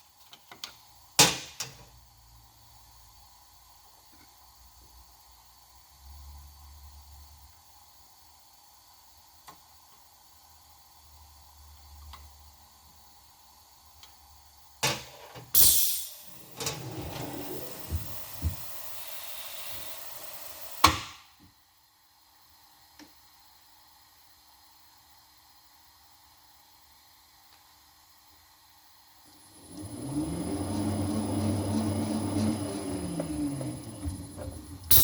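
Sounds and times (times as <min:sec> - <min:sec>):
sharp clack: 0:15.6 - 0:16.3.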